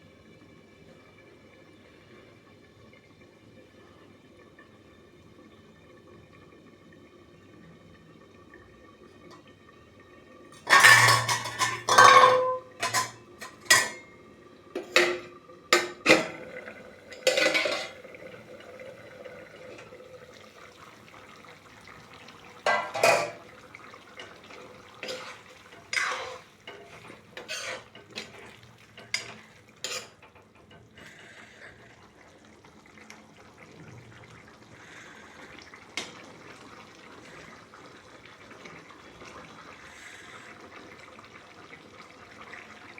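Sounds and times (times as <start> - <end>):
metal spoon scraping a cooking pot: 10.6 - 14.0, 17.1 - 18.0, 22.7 - 23.4, 25.0 - 28.4, 29.1 - 30.2.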